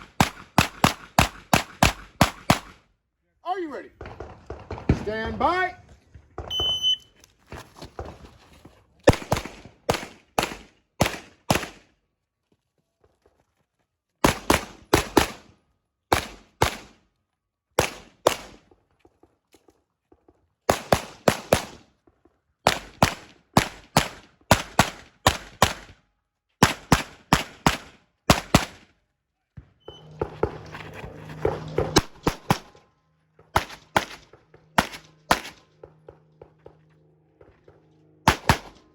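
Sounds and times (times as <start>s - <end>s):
pistol shots: 0.0s - 2.8s, 9.1s - 11.8s, 16.1s - 17.0s, 17.8s - 18.6s, 20.7s - 21.8s, 22.7s - 26.0s, 26.6s - 28.9s, 33.6s - 35.7s, 38.2s - 38.9s
shot timer beep: 6.5s - 7.1s.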